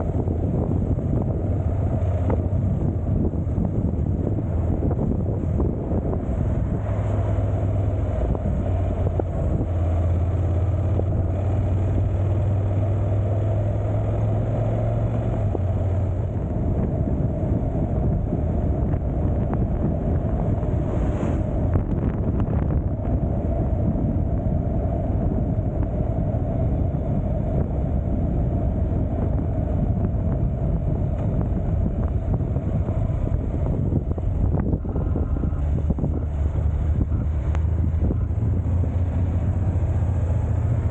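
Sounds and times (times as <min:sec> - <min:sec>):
motorcycle engine: 0:00.0 - 0:24.4, 0:26.7 - 0:40.9
wind noise on microphone: 0:00.0 - 0:40.9.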